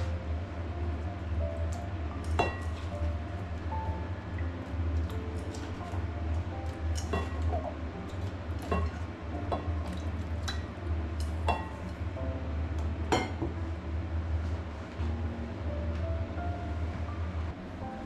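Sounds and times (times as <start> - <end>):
steady low hum: 0.0 - 18.0
dishes and utensils clinking: 2.2 - 2.9, 6.9 - 12.0, 13.1 - 13.5.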